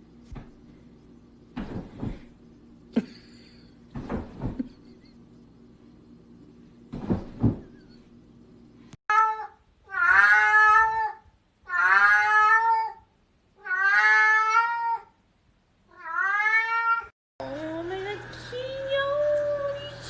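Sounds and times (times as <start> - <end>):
low thuds: 1.5 - 2.6, 6.9 - 7.8
cat meowing: 9.1 - 13.0, 13.6 - 15.1, 15.9 - 17.1.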